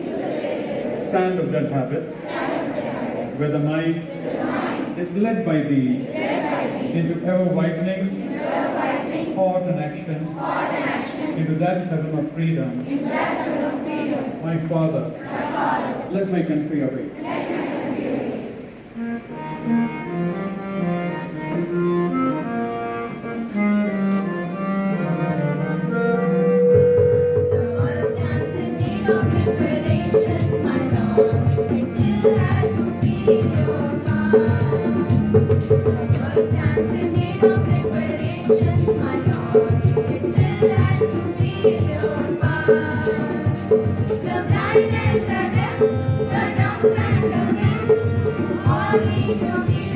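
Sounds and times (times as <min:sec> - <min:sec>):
music melody line: 0:19.0 - 0:49.9
quick rattling percussion beat: 0:26.8 - 0:49.9.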